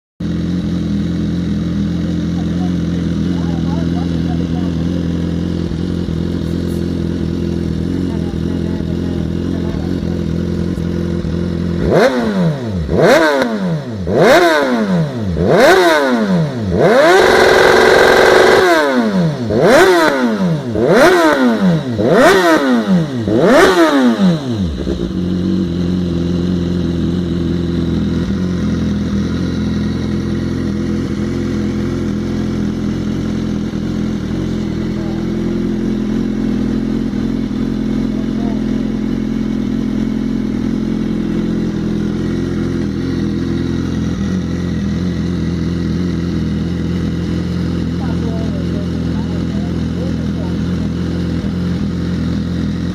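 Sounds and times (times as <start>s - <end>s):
motorcycle engine revving: 0.2s - 52.9s.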